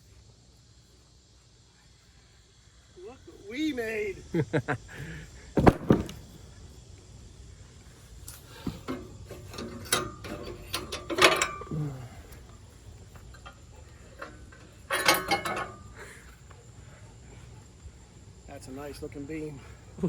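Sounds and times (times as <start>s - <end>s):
metal clanks and rattles: 8.3s - 16.4s.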